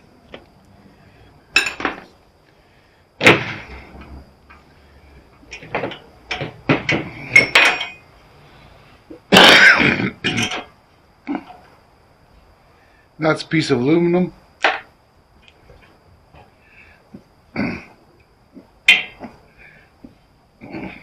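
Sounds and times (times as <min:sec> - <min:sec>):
metal knocks and clanks: 0:05.5 - 0:08.0.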